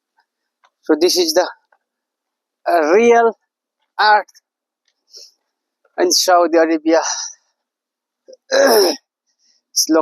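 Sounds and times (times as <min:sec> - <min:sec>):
man speaking: 0:00.8 - 0:01.8, 0:02.6 - 0:04.4, 0:05.9 - 0:07.5, 0:09.8 - 0:10.0.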